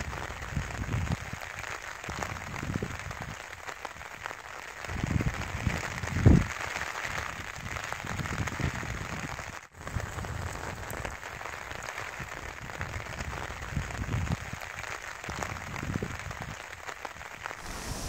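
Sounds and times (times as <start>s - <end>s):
wind rumble on microphone: 0.0s - 1.4s, 2.1s - 3.4s, 4.9s - 6.6s, 7.2s - 11.1s, 12.2s - 14.6s, 15.3s - 16.6s, 17.6s - 18.0s
rain on a tent: 0.0s - 18.0s.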